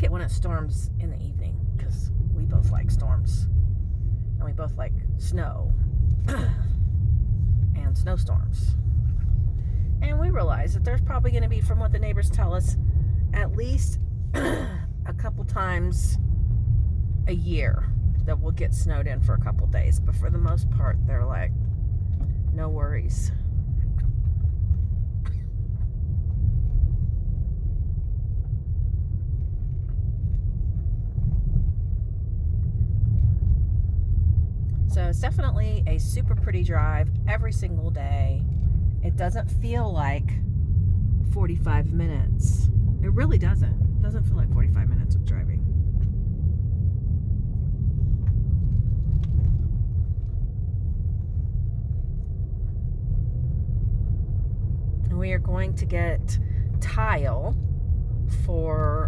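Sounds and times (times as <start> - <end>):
tyres and engine rumbling: 0.0 - 59.0.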